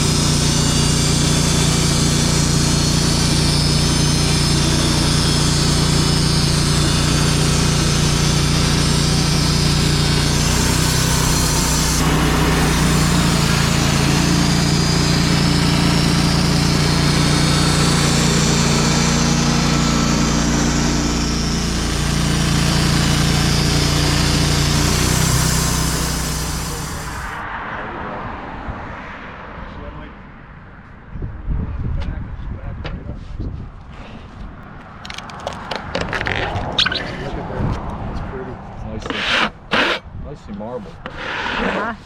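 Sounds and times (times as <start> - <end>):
band sawmill running: 0.0 - 27.4, 39.0 - 40.0, 40.9 - 42.0.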